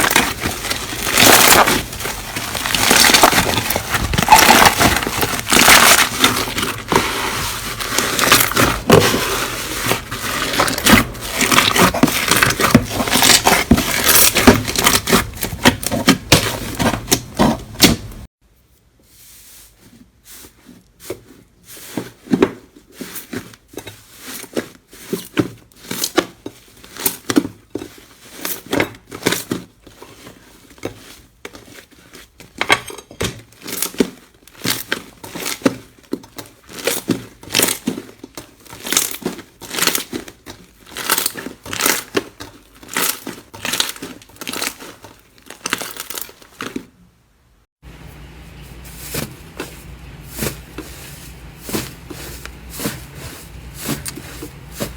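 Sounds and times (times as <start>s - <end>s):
slime squishing and crackling: 0.0s - 18.3s, 33.4s - 47.0s.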